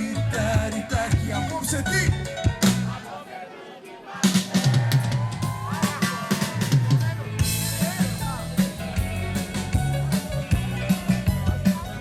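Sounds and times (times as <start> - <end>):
drum kit beat: 0.0 - 3.0, 4.2 - 12.0
low bass notes: 0.0 - 3.0, 6.7 - 12.0.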